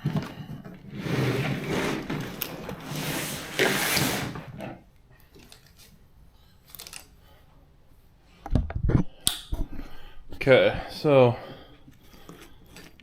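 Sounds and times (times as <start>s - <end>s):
plastic clips clicking: 9.2s - 9.6s.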